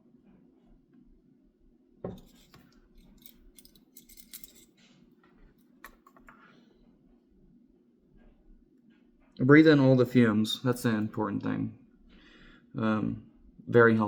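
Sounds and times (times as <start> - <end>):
light metallic clicks and scrapes: 2.1 - 6.4.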